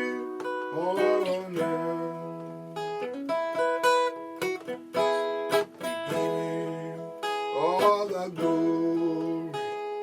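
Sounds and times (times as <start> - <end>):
person singing: 0.0 - 2.5, 5.8 - 10.0
acoustic guitar strumming chords: 0.0 - 10.0.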